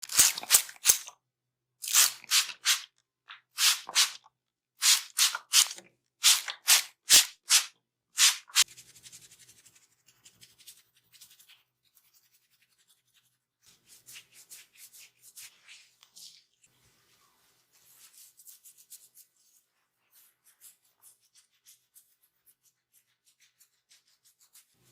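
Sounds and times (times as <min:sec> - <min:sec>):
scratchy rubbing strokes: 0:01.9 - 0:02.9, 0:03.6 - 0:04.2, 0:04.8 - 0:24.9
soft scratching: 0:08.3 - 0:24.9.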